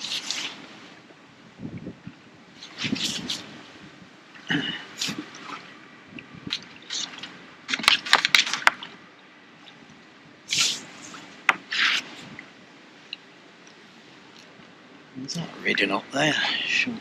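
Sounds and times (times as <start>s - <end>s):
wet squelches and splashes: 0.0s - 0.7s, 4.3s - 14.6s.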